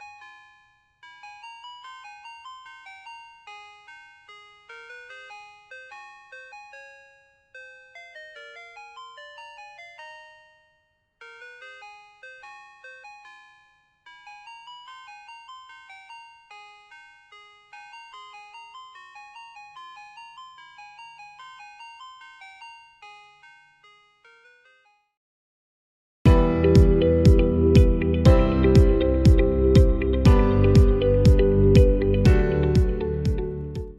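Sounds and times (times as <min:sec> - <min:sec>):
ice cream truck jingle: 0:26.3 - 0:33.9.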